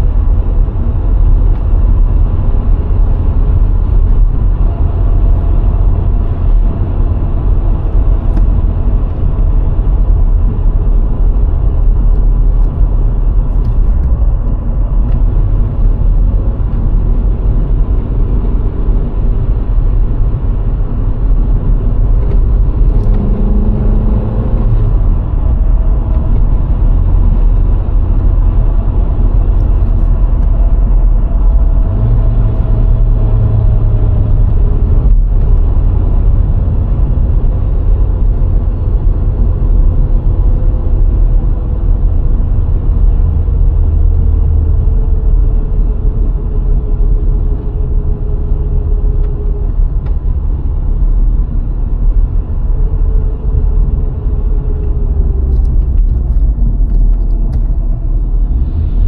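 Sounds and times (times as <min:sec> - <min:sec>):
car driving on road: 0:00.0 - 0:59.0.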